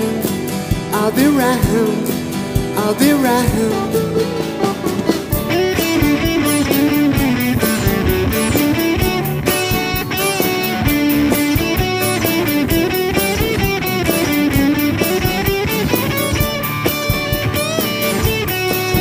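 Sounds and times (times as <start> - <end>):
drums and bass: 0.0 - 19.0
lead electric guitar: 0.0 - 19.0.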